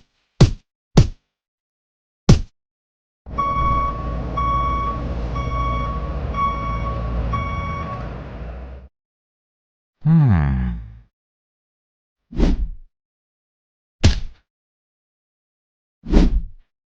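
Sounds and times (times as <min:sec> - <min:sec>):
low engine rumble: 0:03.3 - 0:08.9
truck reversing alarm beeping: 0:03.3 - 0:08.9.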